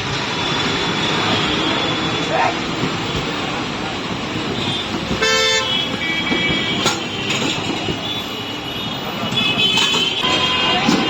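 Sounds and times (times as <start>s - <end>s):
street traffic noise: 0.0s - 11.0s
vehicle horn honking: 4.6s - 11.0s.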